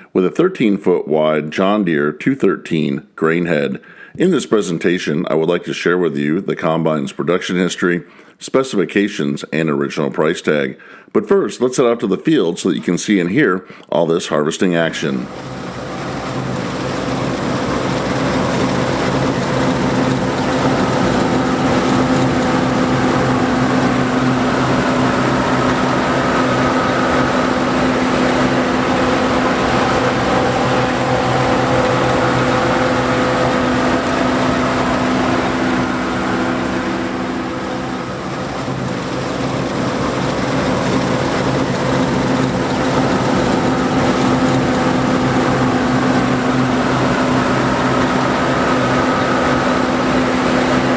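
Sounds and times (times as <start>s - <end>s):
combine harvester engine drone: 15.2s - 50.9s
high machinery whine: 15.2s - 50.9s.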